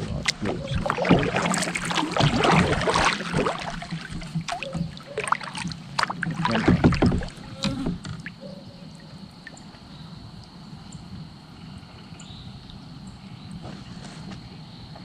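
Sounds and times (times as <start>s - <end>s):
water splashing: 0.0s - 10.7s
knocks on kayak hull: 6.0s - 8.2s.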